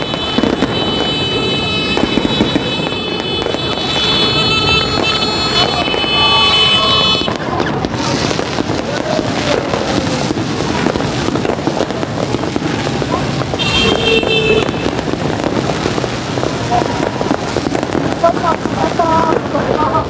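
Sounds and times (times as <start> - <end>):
horn blaring: 0.0 - 7.4, 13.6 - 15.0
fireworks crackling and popping: 0.0 - 20.0.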